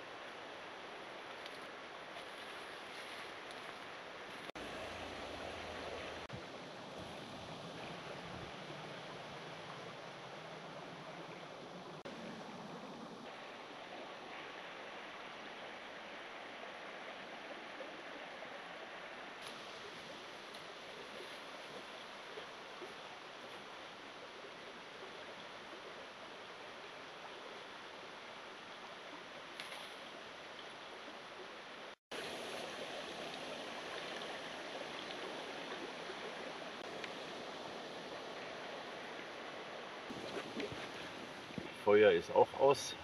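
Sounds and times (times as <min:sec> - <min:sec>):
rushing outdoor noise: 0:00.0 - 0:29.6.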